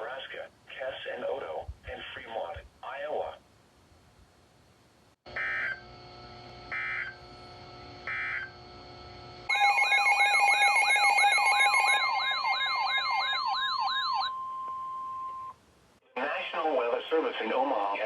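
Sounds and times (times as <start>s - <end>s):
screeching data bursts: 8.1s - 8.6s
warbling alert alarm: 9.5s - 15.6s.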